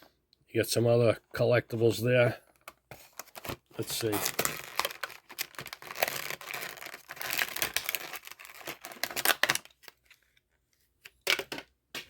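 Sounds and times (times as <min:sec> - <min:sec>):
plastic packaging crinkling: 0:03.1 - 0:10.4.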